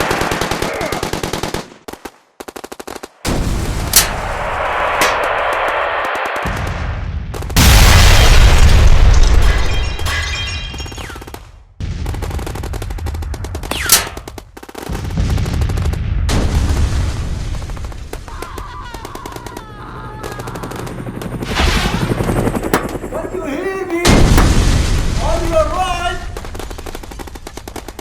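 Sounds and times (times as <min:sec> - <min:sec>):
machine-gun fire: 0:00.0 - 0:05.6, 0:21.2 - 0:28.0
sharp crack: 0:01.7 - 0:08.3, 0:13.6 - 0:14.9, 0:17.2 - 0:22.0, 0:22.6 - 0:28.0
heavy booms: 0:03.3 - 0:09.4, 0:24.1 - 0:28.0
loud blast: 0:03.3 - 0:09.4, 0:24.0 - 0:27.0.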